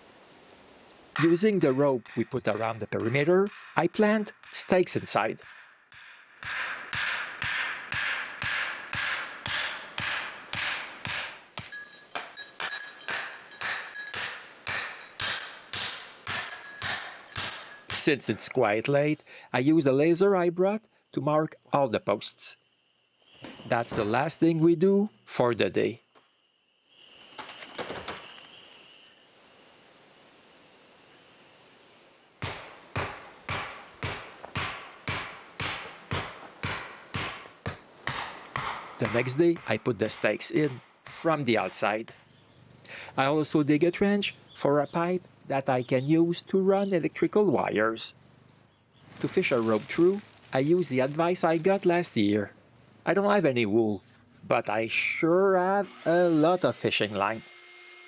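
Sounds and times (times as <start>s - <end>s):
outdoor background noise: 0.0s - 58.0s
hammer driving stakes: 1.2s - 18.7s, 32.4s - 42.3s.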